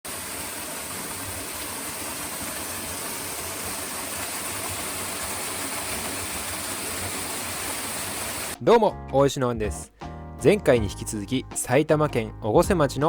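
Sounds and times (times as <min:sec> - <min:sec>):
waterfall rushing: 0:00.1 - 0:08.6.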